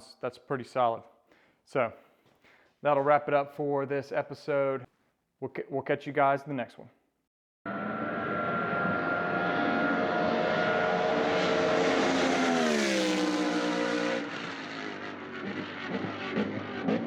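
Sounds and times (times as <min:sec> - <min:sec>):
vehicle engine running: 0:07.7 - 0:17.0.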